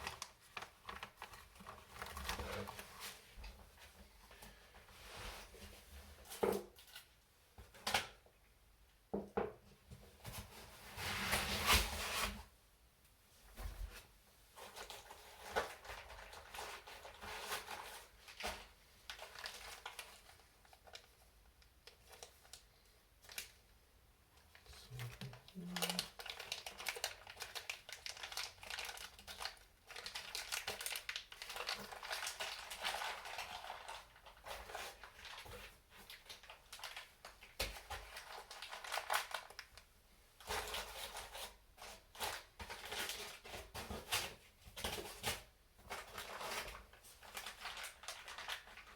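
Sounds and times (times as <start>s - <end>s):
plastic bags rustling: 0.0s - 3.3s, 14.6s - 21.3s, 24.6s - 48.9s.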